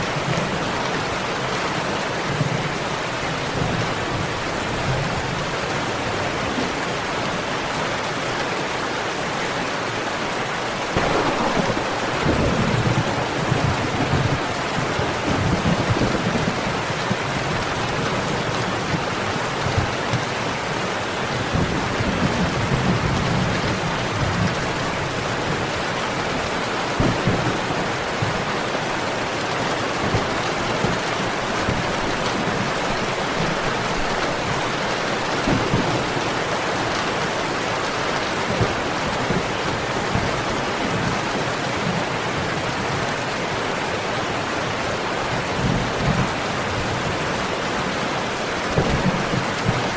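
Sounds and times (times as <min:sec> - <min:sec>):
heavy rain falling: 0:00.0 - 0:49.9
thunder rumbling: 0:10.9 - 0:19.1, 0:26.9 - 0:42.0.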